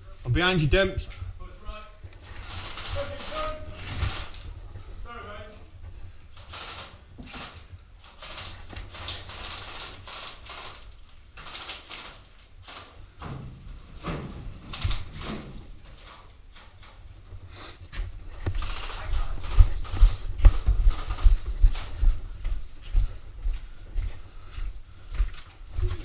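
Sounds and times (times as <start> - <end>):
constant low microphone rumble: 17.1 - 26.0.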